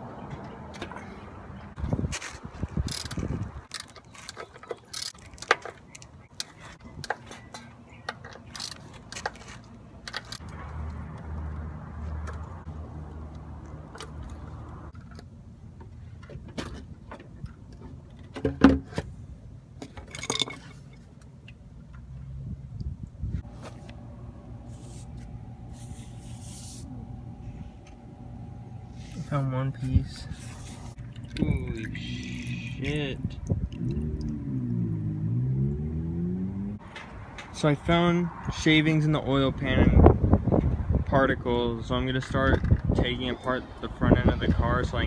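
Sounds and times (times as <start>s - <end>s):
low steady hum: 22.2s - 36.8s.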